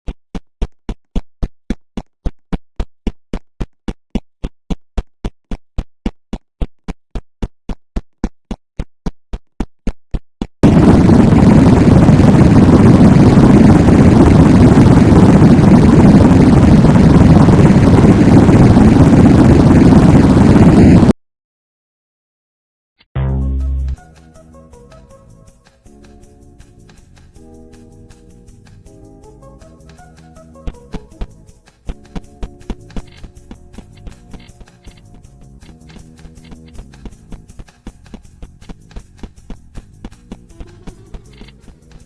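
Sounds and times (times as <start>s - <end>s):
loud distorted noise blast: 10.6s - 21.1s.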